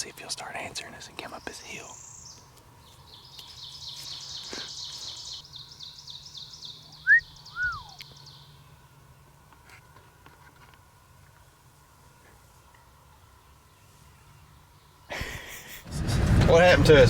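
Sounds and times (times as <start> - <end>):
clear whistled bird notes: 3.1 - 8.6
bird trilling: 6.6 - 8.4.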